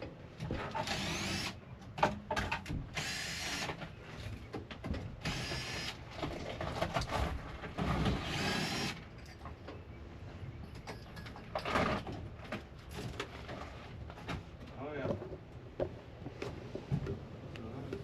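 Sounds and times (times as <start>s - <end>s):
power drill whining: 0.7s - 1.6s, 3.0s - 3.7s, 5.2s - 6.0s, 8.1s - 9.0s.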